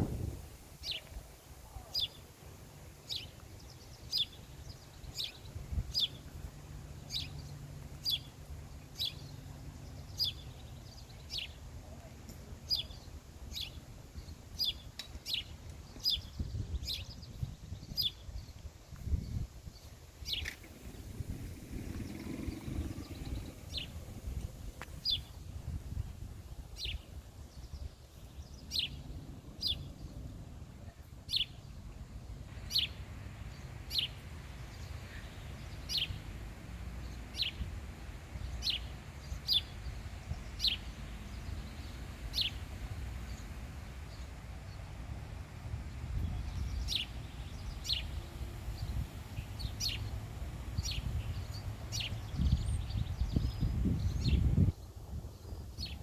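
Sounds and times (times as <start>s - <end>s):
bird chirping: 19.2s - 25.4s, 32.6s - 36.3s, 38.4s - 44.9s, 46.1s - 50.2s.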